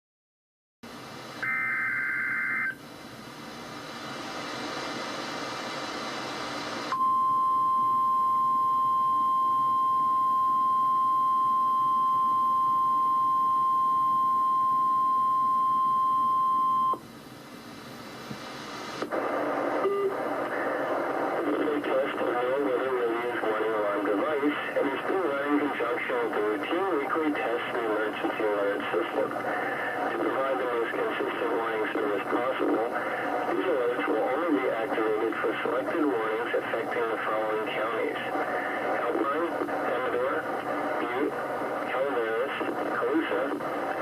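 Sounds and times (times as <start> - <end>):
steady alarm tone: 1.4 - 2.8
radio hiss: 2.4 - 7.0, 17.4 - 44.0.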